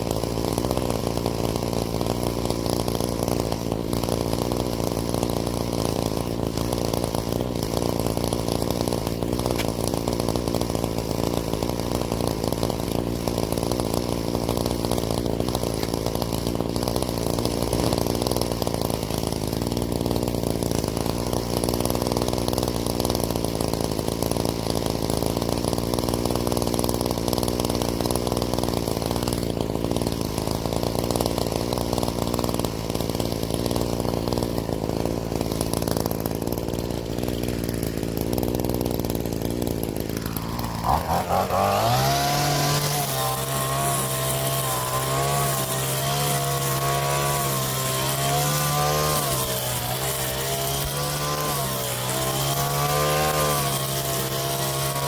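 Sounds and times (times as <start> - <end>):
string trimmer cutting weeds: 0.0 - 55.0.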